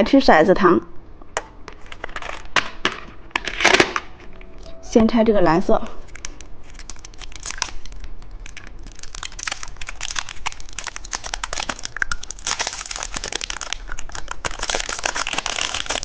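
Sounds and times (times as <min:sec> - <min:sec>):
candy wrapper crinkling: 0:06.0 - 0:16.0.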